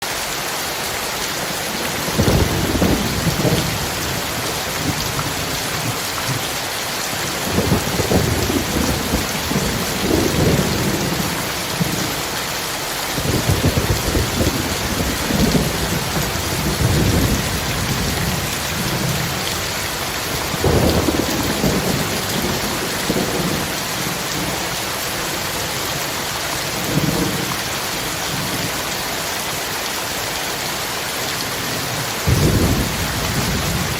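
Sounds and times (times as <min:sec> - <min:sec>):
heavy rain pouring: 0:00.0 - 0:33.9
thunder rolling: 0:02.0 - 0:06.4, 0:07.4 - 0:12.0, 0:13.2 - 0:19.4, 0:20.4 - 0:24.5, 0:32.3 - 0:33.9.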